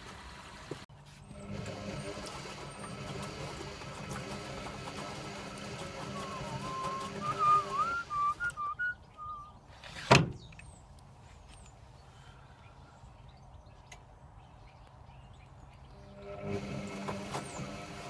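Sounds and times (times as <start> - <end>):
washing machine hum: 0.0 - 8.9, 16.0 - 18.0
wavering whistled tune: 6.1 - 9.6.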